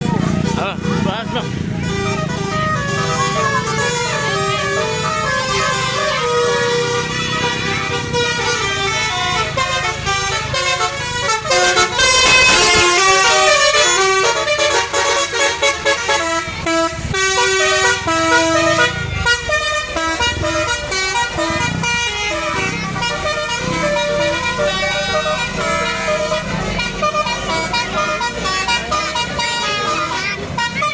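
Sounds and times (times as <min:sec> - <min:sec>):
bus engine running: 0:00.0 - 0:30.9
bus musical horn tune: 0:00.0 - 0:30.9.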